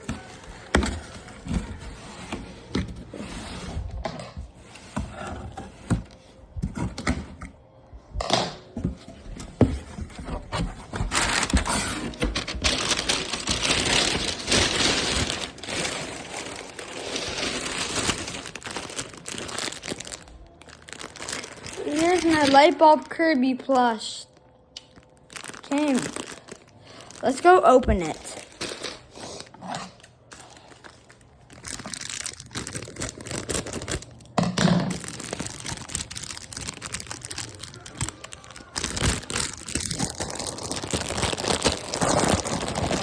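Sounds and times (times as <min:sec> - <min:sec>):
wrapping crinkling and rustling: 0:00.0 - 0:07.4, 0:08.9 - 0:43.0.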